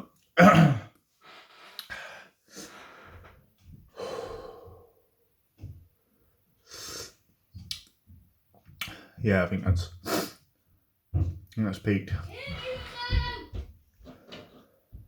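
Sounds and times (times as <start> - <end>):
man breathing hard: 1.2 - 5.2.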